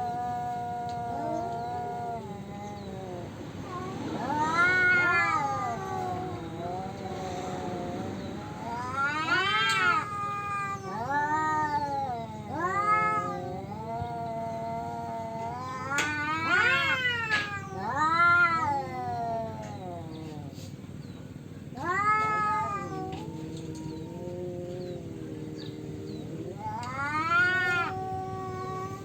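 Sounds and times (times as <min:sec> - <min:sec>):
cats caterwauling: 0:00.0 - 0:29.0.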